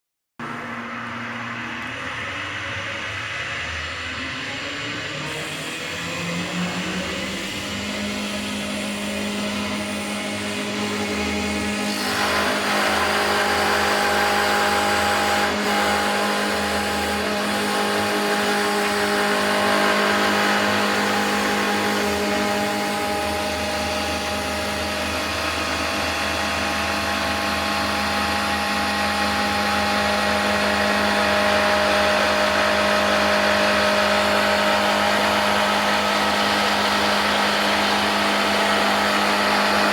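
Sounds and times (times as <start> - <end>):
lathe tool cutting wood hiss: 5.3 - 39.9
wood lathe motor humming: 5.3 - 39.9.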